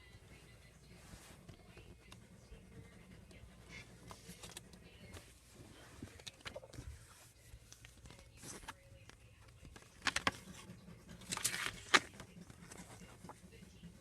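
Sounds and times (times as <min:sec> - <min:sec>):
plastic packaging clicks and crinkles: 0:09.8 - 0:10.4, 0:11.2 - 0:12.2.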